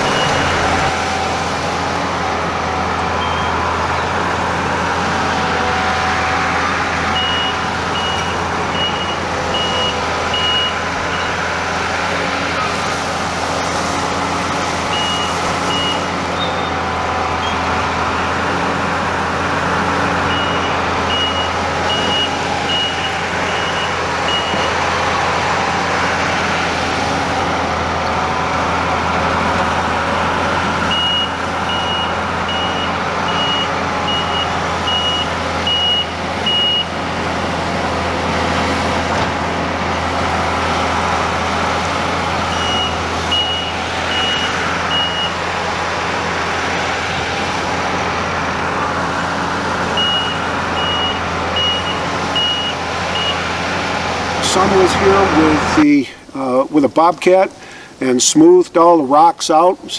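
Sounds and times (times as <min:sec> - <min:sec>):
reversing alarm beeping: 0:00.0 - 0:01.3, 0:02.4 - 0:11.6, 0:14.9 - 0:18.0, 0:19.6 - 0:25.0, 0:30.8 - 0:36.9, 0:42.4 - 0:45.5, 0:49.6 - 0:53.7
diesel engine running: 0:00.0 - 0:59.9.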